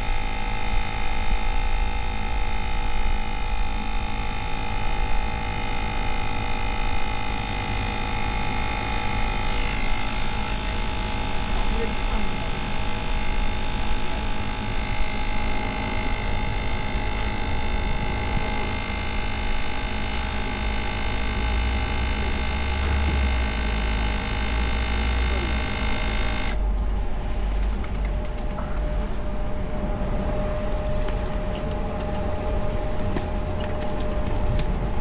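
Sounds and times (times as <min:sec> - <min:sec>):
motorcycle running: 0:00.0 - 0:26.6
steady whining tones: 0:00.0 - 0:35.0.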